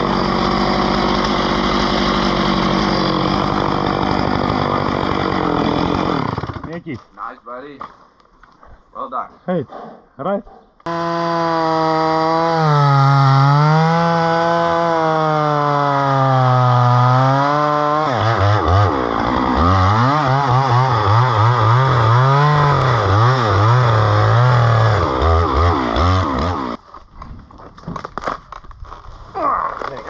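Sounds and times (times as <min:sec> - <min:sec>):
chainsaw cutting wood: 0:00.0 - 0:06.8, 0:10.9 - 0:26.8.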